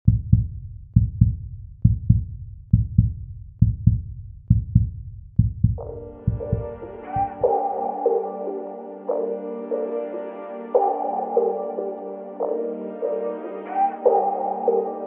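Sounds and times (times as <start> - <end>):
heartbeat-like double thump: 0.1 - 7.5
brass-like synth chord: 5.8 - 15.0.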